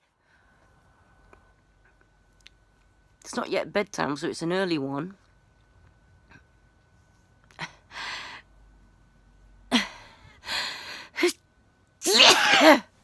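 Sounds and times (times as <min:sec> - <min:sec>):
woman sneezing: 0:12.0 - 0:12.9.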